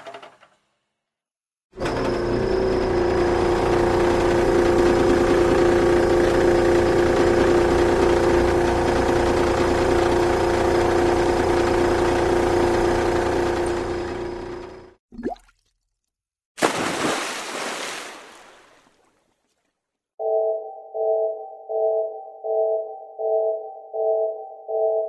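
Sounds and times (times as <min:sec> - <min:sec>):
machine humming: 0:01.8 - 0:15.0.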